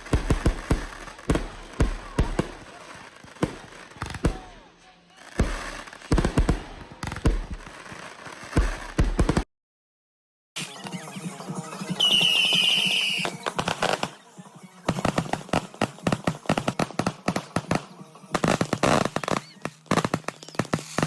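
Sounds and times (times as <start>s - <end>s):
firework crackling pops: 0.0s - 4.6s, 5.2s - 9.5s, 12.0s - 14.2s, 14.9s - 21.0s
firework whistle: 10.7s - 16.8s, 18.4s - 21.0s.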